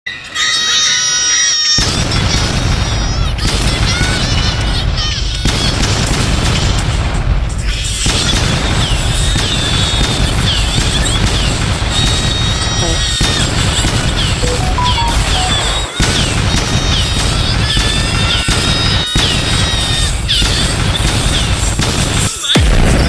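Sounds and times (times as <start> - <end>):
clear tones: 14.4 - 16.0
music: 14.4 - 16.1.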